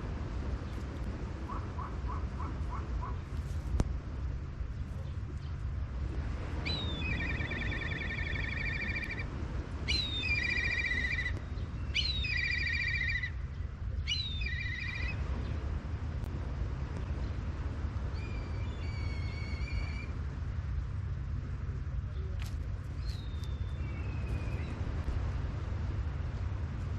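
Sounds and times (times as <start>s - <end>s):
songbird singing trills: 6.6s - 9.3s, 9.9s - 15.2s, 18.1s - 20.1s, 23.0s - 24.8s.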